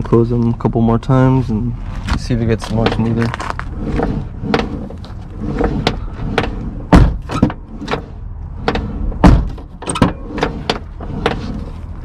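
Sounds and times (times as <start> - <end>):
car door shutting thunk: 5.8 - 8.1, 8.7 - 11.4.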